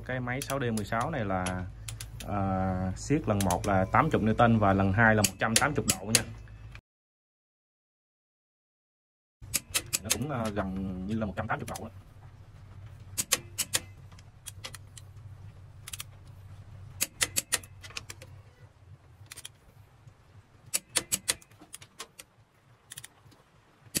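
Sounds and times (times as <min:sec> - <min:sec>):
steady low hum: 0:00.0 - 0:06.8, 0:09.4 - 0:24.0
ratchet wrench clicking: 0:17.0 - 0:17.7, 0:20.7 - 0:21.8.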